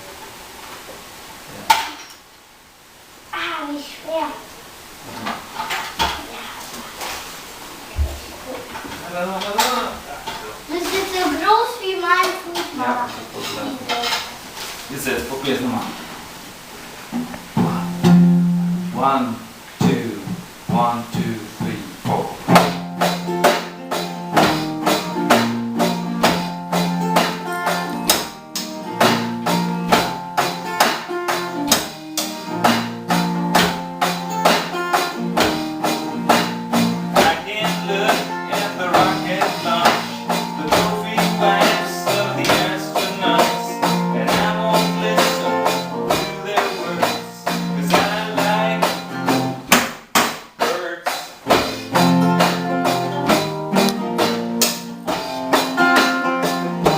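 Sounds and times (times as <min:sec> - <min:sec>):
guitar: 0:07.9 - 0:56.9
drum beat: 0:17.1 - 0:19.1, 0:19.8 - 0:56.9.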